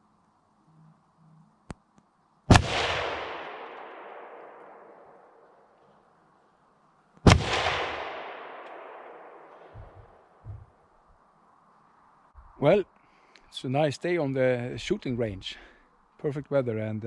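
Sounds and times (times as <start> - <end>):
echoing rifle shots: 2.5 - 5.7, 7.2 - 10.3
soft low thumps: 9.7 - 10.7.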